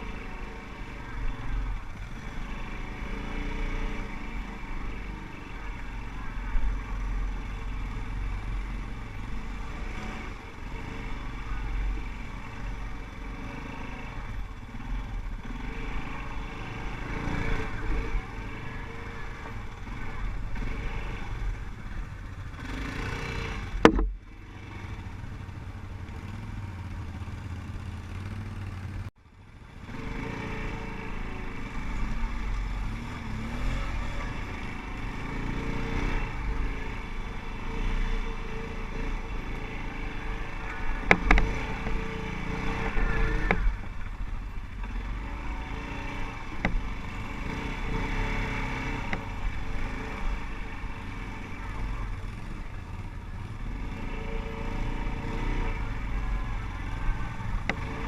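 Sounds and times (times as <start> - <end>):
atv engines revving: 0.0 - 58.0
sharp knock: 23.8 - 24.2.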